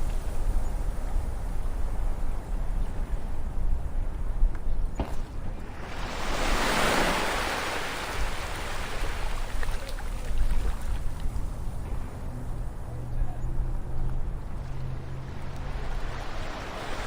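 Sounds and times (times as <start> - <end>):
low rumble of surf: 0.0 - 17.0
wave washing onto shore: 5.0 - 11.8, 14.8 - 17.0.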